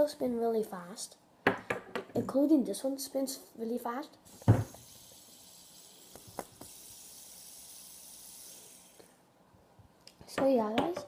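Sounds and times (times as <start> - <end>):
fidget spinner whirring: 4.3 - 9.2.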